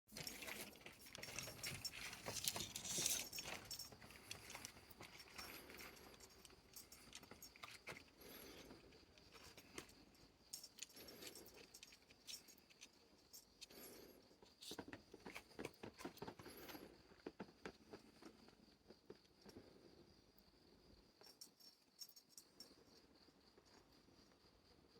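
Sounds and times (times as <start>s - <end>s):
cat toy rattling and clicking: 0.1s - 8.7s.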